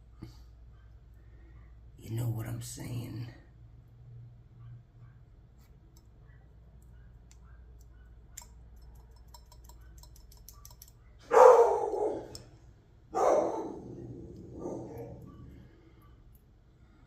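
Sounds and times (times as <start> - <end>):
dog barking: 4.6 - 5.3, 11.2 - 12.5, 13.1 - 15.5.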